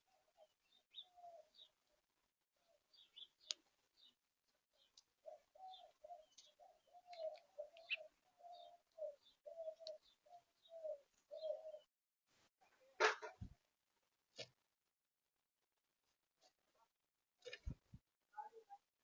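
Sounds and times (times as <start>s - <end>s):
dove cooing: 0.0s - 1.7s, 5.2s - 11.9s
small birds chirping: 0.0s - 11.9s.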